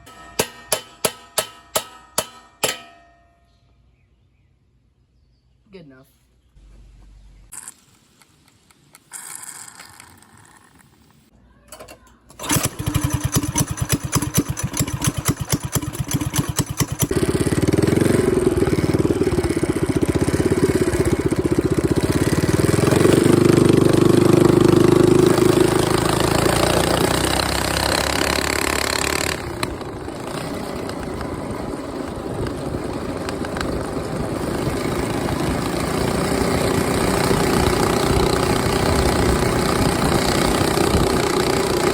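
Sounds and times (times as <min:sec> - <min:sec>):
motorcycle engine starting and running: 0:11.7 - 0:41.9.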